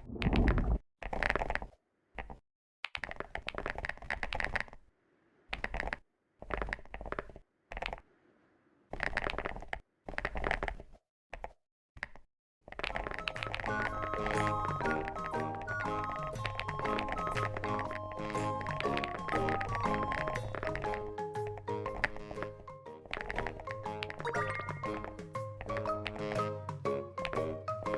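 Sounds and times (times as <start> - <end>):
typing on a keyboard: 5.6 - 8.0, 12.7 - 15.8
music: 12.9 - 27.9.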